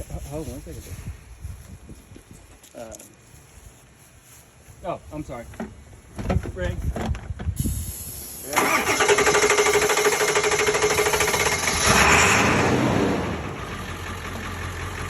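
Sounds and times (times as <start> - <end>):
engine starter cranking: 8.5 - 14.4
engine revving and idling: 8.6 - 15.0.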